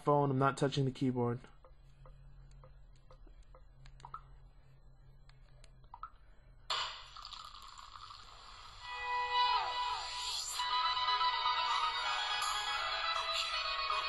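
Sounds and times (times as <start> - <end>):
soft clicks: 1.6 - 4.3
song from laptop: 8.4 - 14.0.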